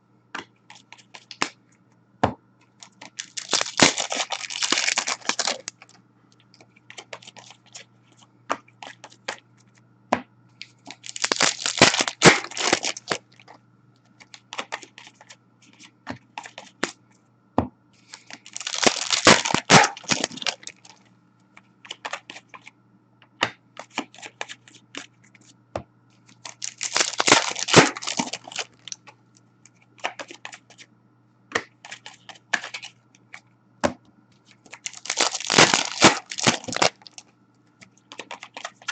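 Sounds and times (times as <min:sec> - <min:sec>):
faint steady hum: 0:00.0 - 0:38.9
foil wrappers tearing and crinkling: 0:02.9 - 0:05.8, 0:10.9 - 0:13.5, 0:18.1 - 0:21.0, 0:26.4 - 0:29.0, 0:34.7 - 0:37.2.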